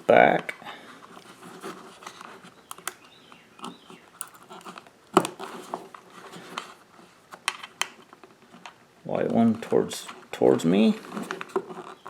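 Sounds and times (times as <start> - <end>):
wires rustling: 0.0 - 12.0
plastic connectors clicking: 2.6 - 5.4.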